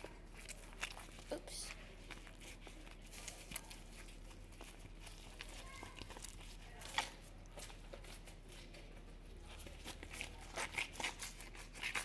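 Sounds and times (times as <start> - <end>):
faint handling crinkles and clicks: 0.0 - 12.0.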